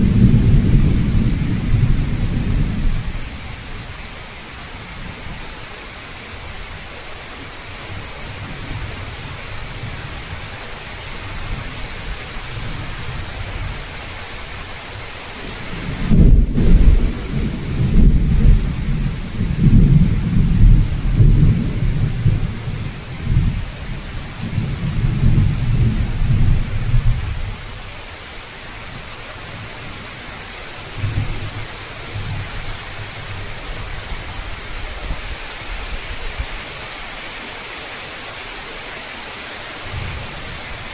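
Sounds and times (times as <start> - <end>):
rolling thunder rumble: 0.0 - 4.0, 15.5 - 27.6
heavy rain pouring: 0.0 - 40.9.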